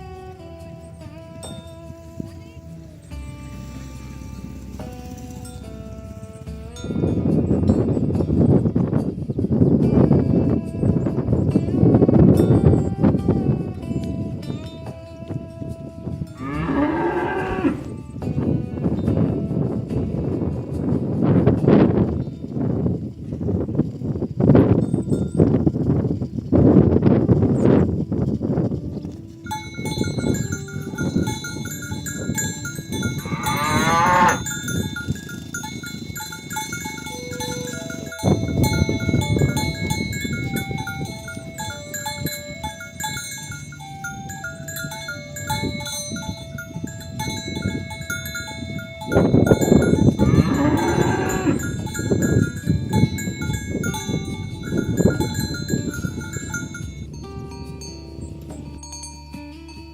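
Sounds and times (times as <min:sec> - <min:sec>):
cattle bells clanking: 0:00.0 - 0:10.3, 0:10.9 - 0:59.9
cow mooing: 0:16.4 - 0:18.0, 0:33.2 - 0:34.6, 0:50.1 - 0:51.8.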